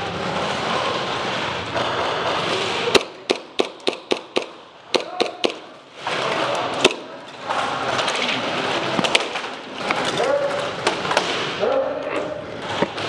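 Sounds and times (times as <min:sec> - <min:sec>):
airsoft gun shots: 0:02.9 - 0:05.8.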